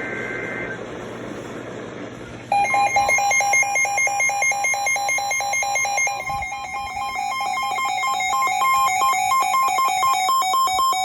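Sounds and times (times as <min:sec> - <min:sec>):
fast even beeping: 0:02.5 - 0:11.0
steady alert tone: 0:02.5 - 0:11.0.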